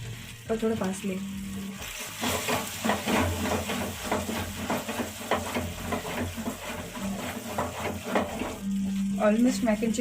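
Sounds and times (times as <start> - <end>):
sauce bubbling and sizzling: 0.0 - 10.0
spoon scraping a pan: 1.8 - 8.6.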